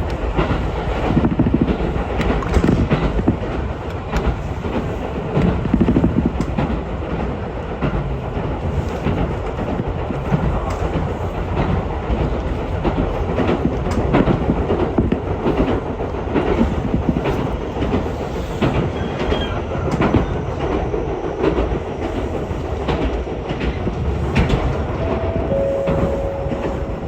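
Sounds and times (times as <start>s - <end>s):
train rumble inside carriage: 0.0s - 27.0s
short steady tone: 25.0s - 27.0s.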